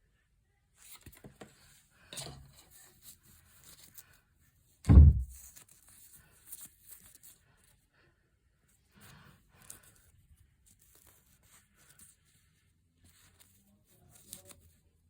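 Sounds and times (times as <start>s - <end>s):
loud deep thump: 4.9s - 5.4s.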